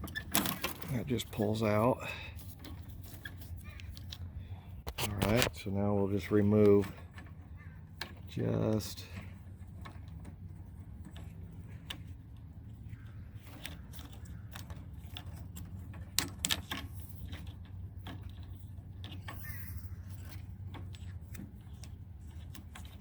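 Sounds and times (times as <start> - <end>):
cable and fittings clicking and rattling: 0.0 - 23.0
steady low hum: 0.0 - 23.0.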